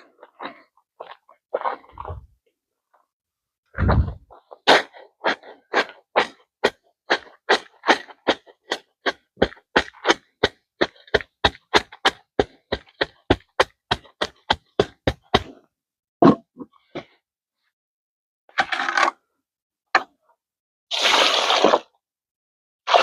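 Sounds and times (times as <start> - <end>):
dull strikes tamping concrete: 5.8 - 15.6.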